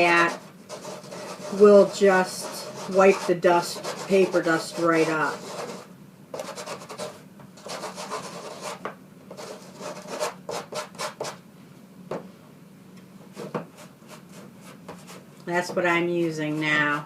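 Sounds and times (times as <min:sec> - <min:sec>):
scratchy rubbing on cardstock: 0:00.0 - 0:11.4, 0:13.3 - 0:15.2.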